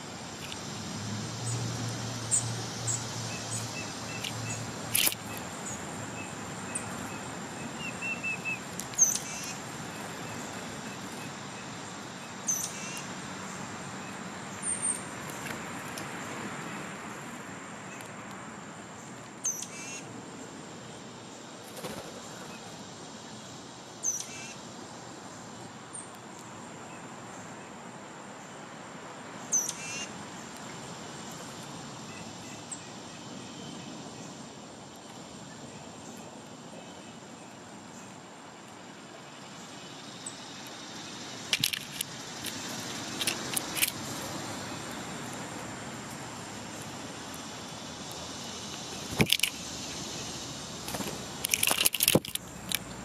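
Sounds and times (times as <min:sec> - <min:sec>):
high insect drone: 0:00.0 - 0:53.0
sharp clicks: 0:04.2 - 0:05.4, 0:41.5 - 0:44.0, 0:50.9 - 0:53.0.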